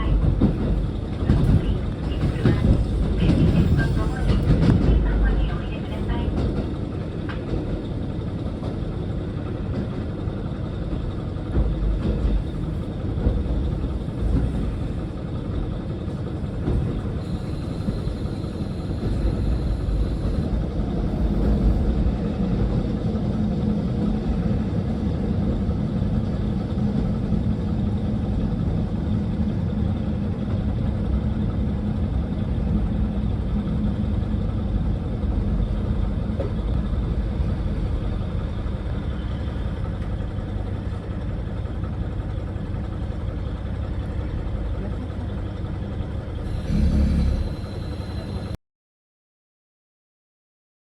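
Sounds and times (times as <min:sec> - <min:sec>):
diesel railcar rumbling: 0:00.0 - 0:48.6
faint high whine: 0:46.4 - 0:48.6.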